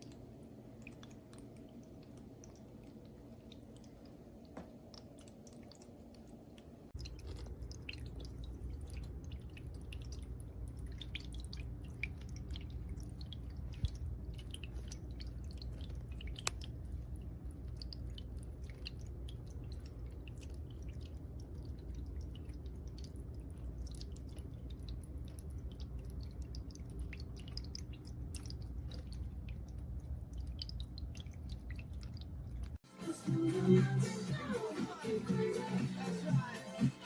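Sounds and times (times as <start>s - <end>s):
water trickling over rocks: 0.0s - 32.8s.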